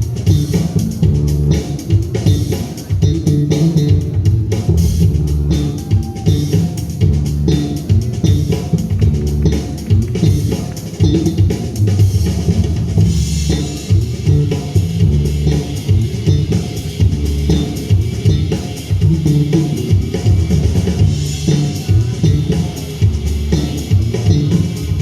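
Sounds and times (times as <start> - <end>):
drum kit keeping time: 0.0 - 25.0
electric bass guitar solo: 0.0 - 25.0.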